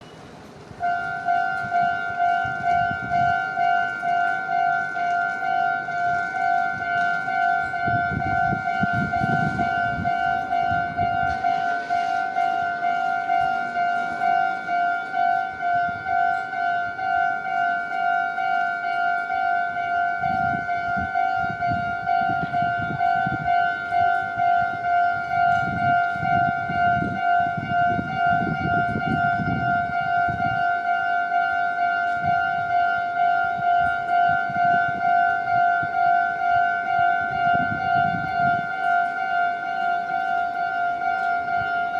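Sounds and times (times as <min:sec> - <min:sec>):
level-crossing alarm bell: 0:00.8 - 0:41.9.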